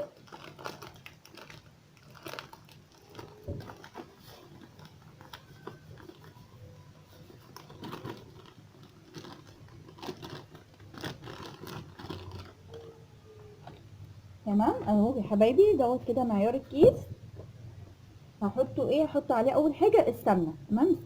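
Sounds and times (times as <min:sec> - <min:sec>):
plastic packet crinkling: 0:00.0 - 0:13.9.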